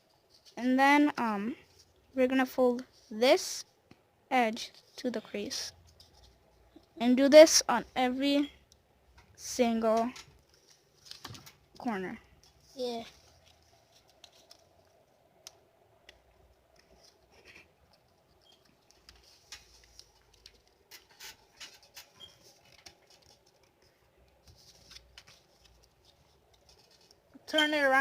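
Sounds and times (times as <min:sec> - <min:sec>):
paper rustling and crinkling: 0:10.2 - 0:15.5, 0:16.7 - 0:27.3.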